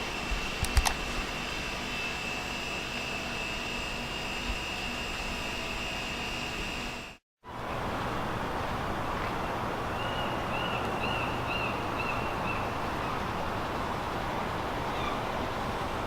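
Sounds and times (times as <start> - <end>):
distant traffic: 7.5 - 16.0.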